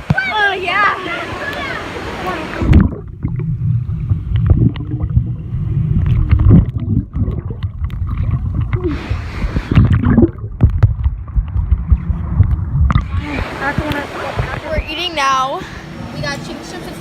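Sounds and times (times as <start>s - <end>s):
hissing water rush: 0.0s - 7.5s, 8.2s - 10.3s, 11.6s - 17.0s
water sloshing and gurgling: 1.2s - 16.4s
low rumble: 2.6s - 14.8s.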